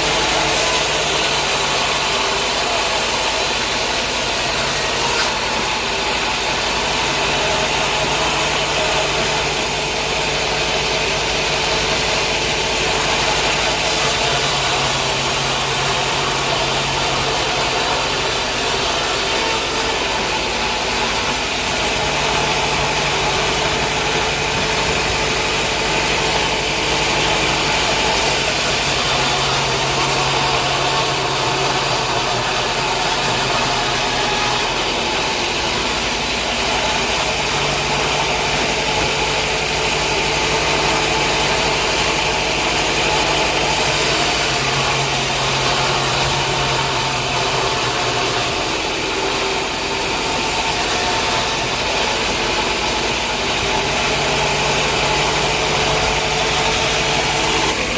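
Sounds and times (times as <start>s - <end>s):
sawmill machinery drone: 0.0s - 57.9s.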